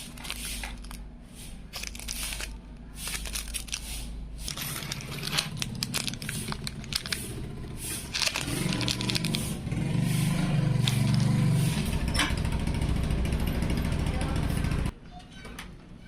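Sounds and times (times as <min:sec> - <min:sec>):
plastic packaging crinkling: 0:00.0 - 0:09.7, 0:10.7 - 0:11.5.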